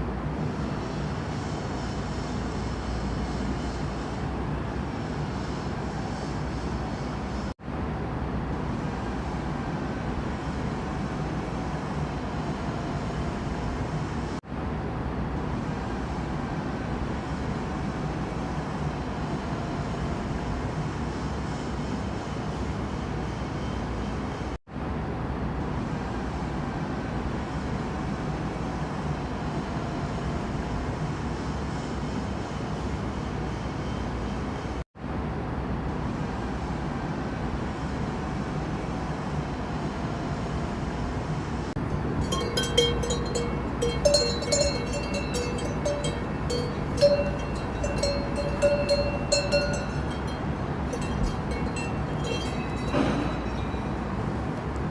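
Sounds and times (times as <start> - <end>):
steady rumbling: 41.8 - 54.6
cowbells clanking: 41.9 - 54.0.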